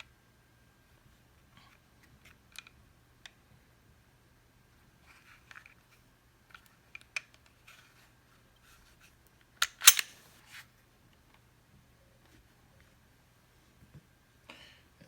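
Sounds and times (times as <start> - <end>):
pistol metal clicks and scrapes: 9.6 - 10.2
pistol slide clack: 9.6 - 10.2.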